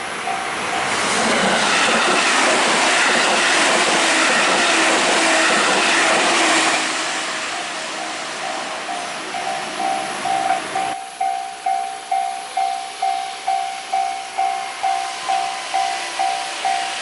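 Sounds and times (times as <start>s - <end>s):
train passing: 0.0s - 17.0s
level crossing bell ringing: 8.5s - 17.0s.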